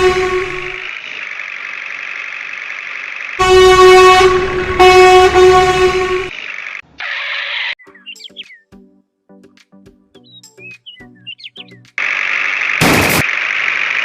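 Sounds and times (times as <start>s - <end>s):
truck horn blasts: 0.0s - 0.9s, 3.4s - 6.4s.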